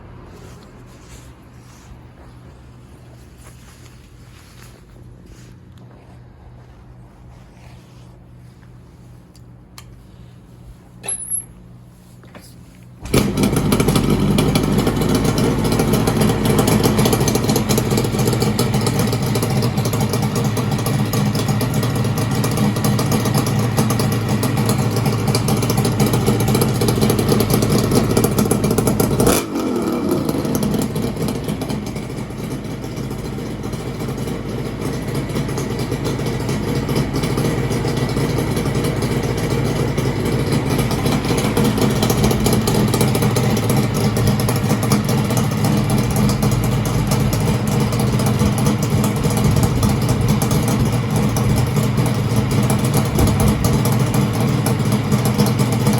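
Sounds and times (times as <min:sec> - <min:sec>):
two-stroke engine revving: 0:13.0 - 0:55.9.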